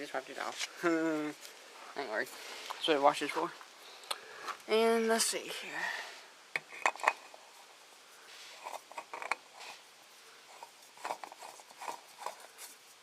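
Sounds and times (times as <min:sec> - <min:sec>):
oil filter clicks and scrapes: 0:06.6 - 0:07.4, 0:08.5 - 0:09.8, 0:10.6 - 0:12.7.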